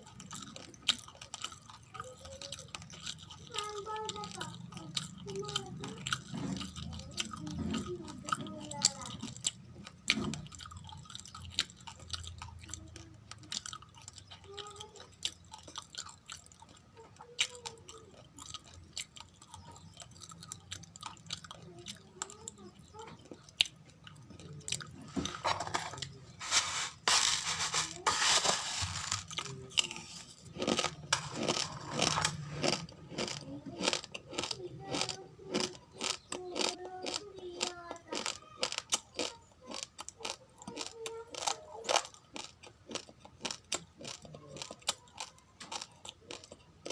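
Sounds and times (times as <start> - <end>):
raw rice being chewed: 0.0 - 46.9.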